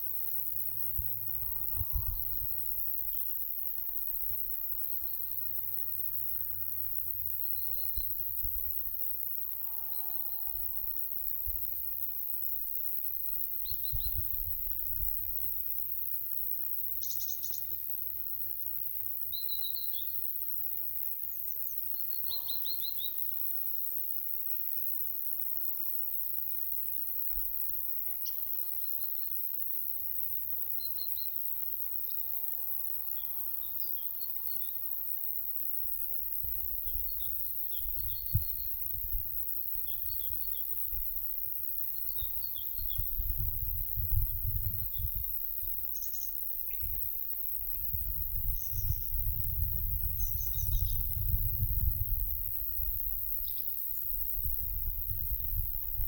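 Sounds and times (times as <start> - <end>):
insects hissing: 0.0 - 56.0
wind gusting on microphone: 1.7 - 2.8, 42.8 - 45.8, 47.7 - 53.4, 54.2 - 56.0
songbird chirps and trills: 7.4 - 8.2, 16.9 - 17.8, 19.2 - 20.2, 21.3 - 23.3, 33.0 - 35.0, 41.9 - 44.1, 47.7 - 49.2, 50.1 - 51.2.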